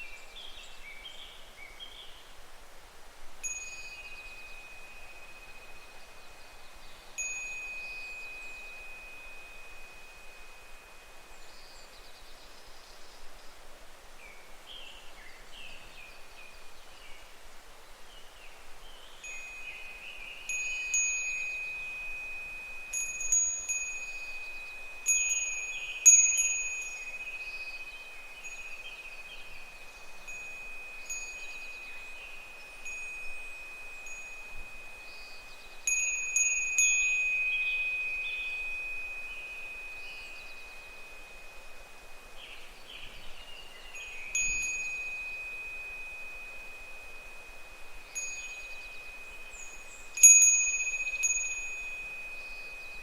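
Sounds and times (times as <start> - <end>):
wind chime jingling: 3.4 - 6.1, 7.2 - 11.3, 20.5 - 42.6, 43.6 - 53.0.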